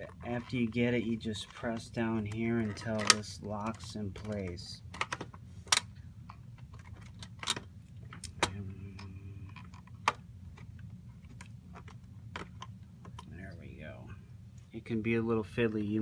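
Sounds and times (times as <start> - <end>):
plastic clicks and knocks: 1.4 - 13.3.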